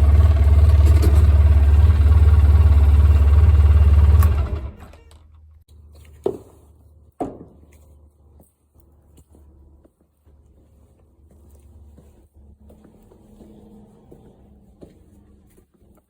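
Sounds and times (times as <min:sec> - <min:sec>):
utility vehicle engine running: 0:00.0 - 0:05.5.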